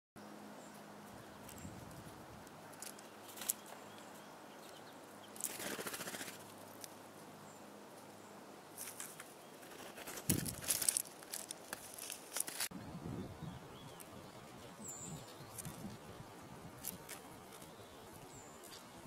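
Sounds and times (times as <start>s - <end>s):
birds tapping: 0.6s - 7.0s, 13.4s - 16.1s
wings fluttering: 1.4s - 3.8s, 5.3s - 7.0s, 8.8s - 12.7s.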